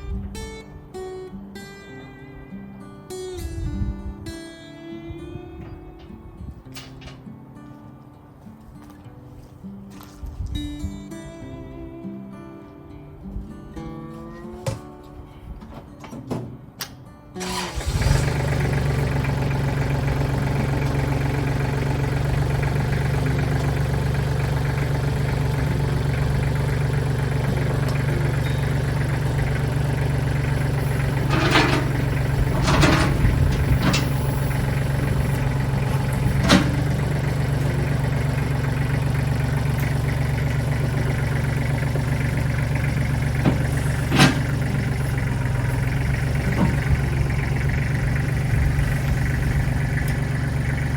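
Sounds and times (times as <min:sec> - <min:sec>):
metallic clanks: 0:05.7 - 0:07.3, 0:19.0 - 0:41.4, 0:42.0 - 0:50.9
engine idling: 0:17.4 - 0:50.9.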